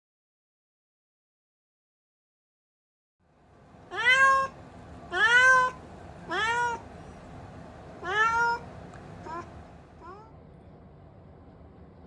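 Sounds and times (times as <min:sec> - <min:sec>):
kitten meowing: 0:03.9 - 0:06.8, 0:08.0 - 0:10.3.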